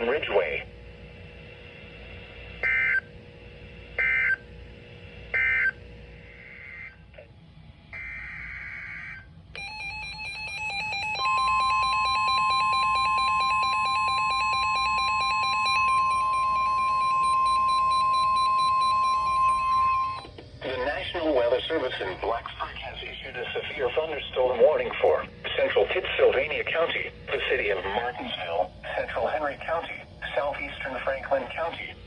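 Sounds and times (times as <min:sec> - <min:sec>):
loud steady alert tone: 0:08.0 - 0:20.3
alert data tone bursts: 0:09.0 - 0:20.3.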